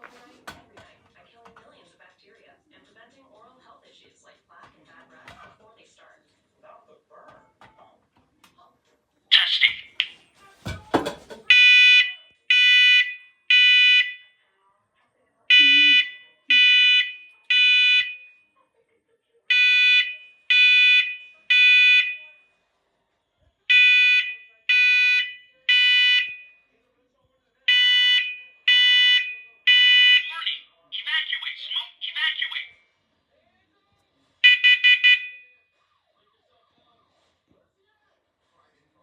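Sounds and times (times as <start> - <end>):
smoke alarm beeping: 11.4 - 14.3, 15.5 - 18.4, 19.5 - 22.4, 23.7 - 26.6, 27.7 - 30.5, 34.4 - 35.6.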